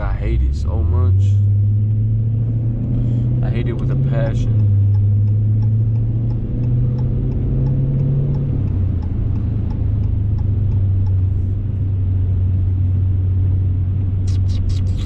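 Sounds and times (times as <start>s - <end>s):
car engine and road hum: 0.0s - 15.0s
faint regular ticking: 2.9s - 11.7s.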